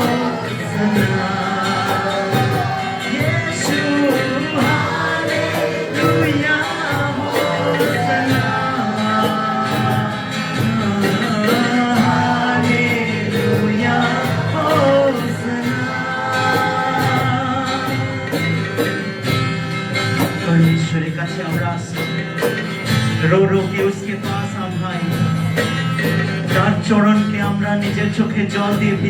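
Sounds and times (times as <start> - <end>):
steady cymbal beat: 0.0 - 23.2.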